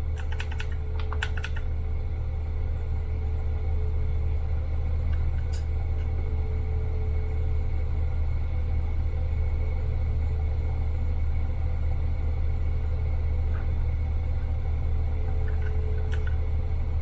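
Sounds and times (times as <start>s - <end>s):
steady low hum: 0.0s - 17.0s
mechanical keyboard key clicks: 0.2s - 1.6s.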